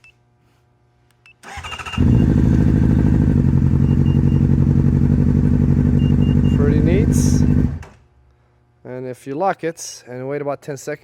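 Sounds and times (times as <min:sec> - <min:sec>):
motorcycle starter cranking: 0:01.4 - 0:02.8
motorcycle engine idling: 0:01.6 - 0:07.8.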